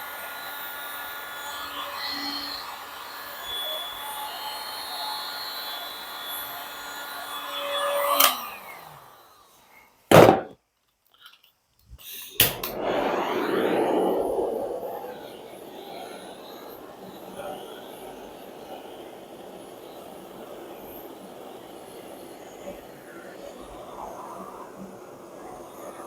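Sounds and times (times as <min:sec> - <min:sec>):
rush of blown air: 0:12.4 - 0:25.6.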